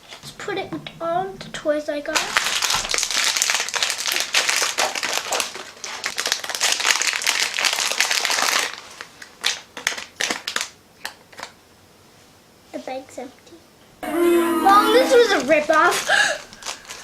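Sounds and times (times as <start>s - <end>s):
gift bag crinkling and rustling: 2.4s - 10.7s, 16.2s - 17.0s.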